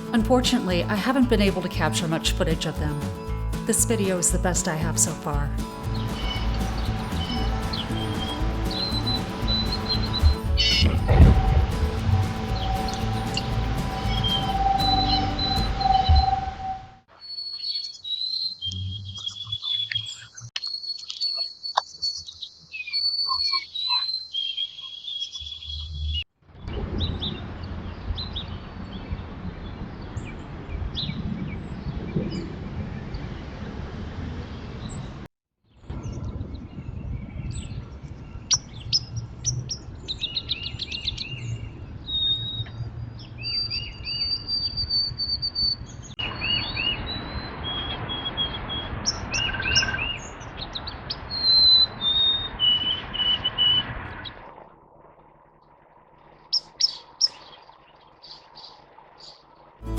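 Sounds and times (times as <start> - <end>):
songbird chirping and whistling: 4.1 - 25.9
low rumble: 6.6 - 17.0.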